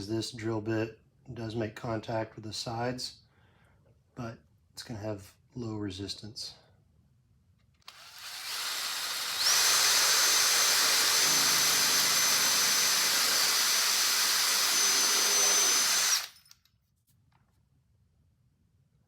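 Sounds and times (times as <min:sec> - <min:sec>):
electric drill boring through metal: 0:07.9 - 0:16.6.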